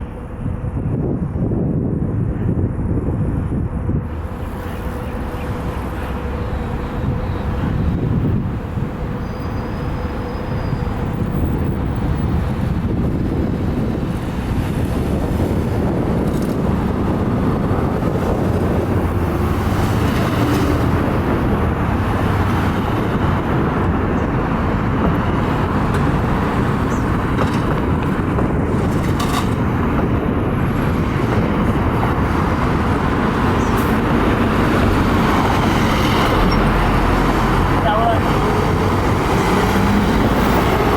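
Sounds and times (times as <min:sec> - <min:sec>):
road traffic rumble: 0:00.0 - 0:40.9.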